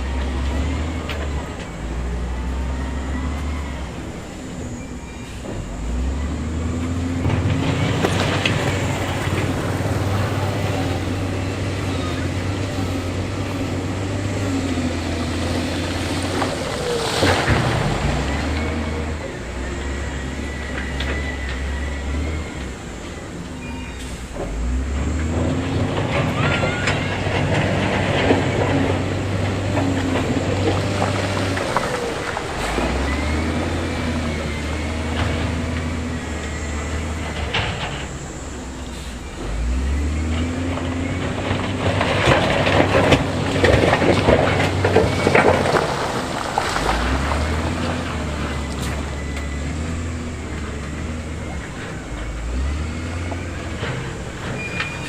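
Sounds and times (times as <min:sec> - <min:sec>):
diesel engine revving: 0:00.0 - 0:55.0
stone crunching and scraping: 0:07.4 - 0:11.0.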